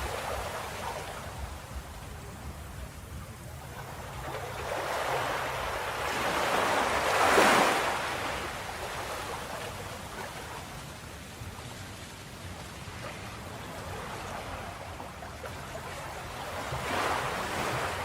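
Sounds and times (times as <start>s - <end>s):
ocean wave breaking: 4.3s - 10.7s.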